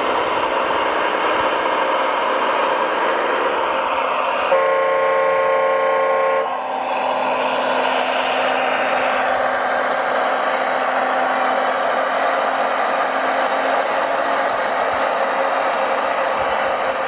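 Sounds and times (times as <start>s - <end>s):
mechanical running hum: 0.0s - 17.0s
model truck horn: 4.5s - 6.8s.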